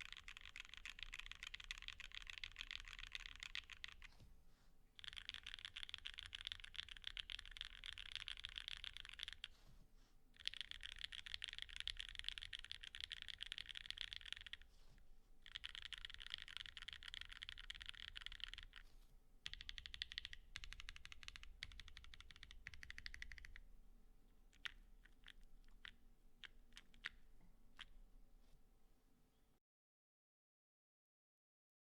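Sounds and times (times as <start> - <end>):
mechanical keyboard typing: 0.0 - 4.1, 5.0 - 9.5, 10.4 - 14.6, 15.4 - 18.8, 19.5 - 23.6, 24.6 - 27.2.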